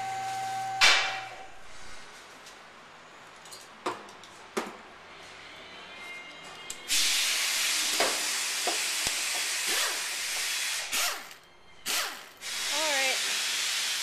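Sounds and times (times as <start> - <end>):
pressurised air jet hissing: 6.9 - 11.1.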